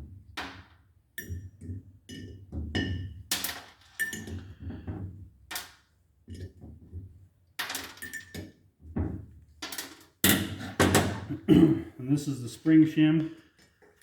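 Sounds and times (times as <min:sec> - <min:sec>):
metal tools clinking and knocking: 0:07.7 - 0:08.5.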